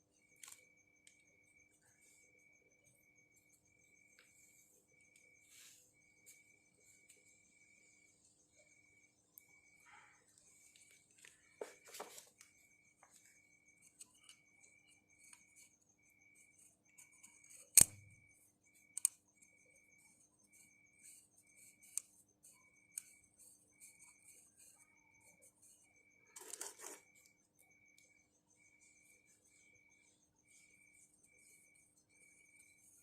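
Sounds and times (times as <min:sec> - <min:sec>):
insects chirping: 0:00.0 - 0:33.0.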